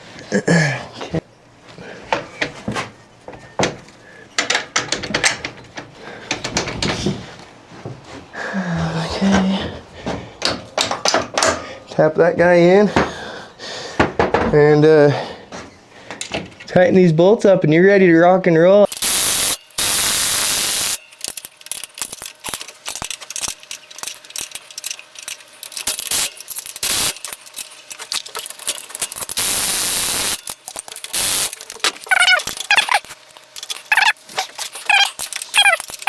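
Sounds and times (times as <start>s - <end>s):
steady hissing: 18.9s - 21.0s, 25.9s - 27.3s, 29.1s - 30.4s, 31.1s - 31.6s
ratchet wrench clicking: 18.9s - 36.0s.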